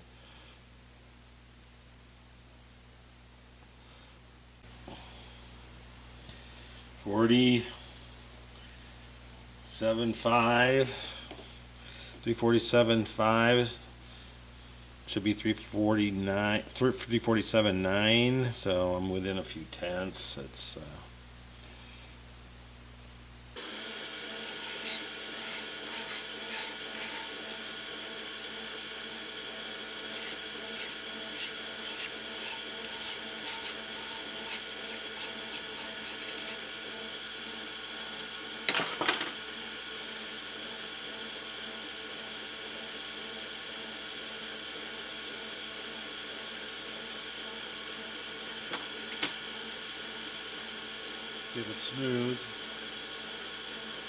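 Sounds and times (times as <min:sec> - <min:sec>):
metal lathe whining: 0:23.6 - 0:37.7
light ticks of tool work: 0:24.6 - 0:27.6, 0:30.0 - 0:36.6.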